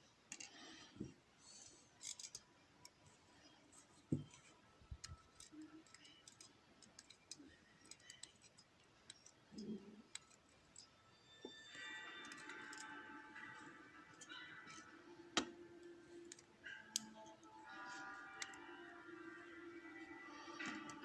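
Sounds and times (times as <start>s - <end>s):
small clicks of lock parts: 2.0s - 3.0s, 5.0s - 11.0s, 12.2s - 15.6s, 16.2s - 17.6s, 18.4s - 18.6s.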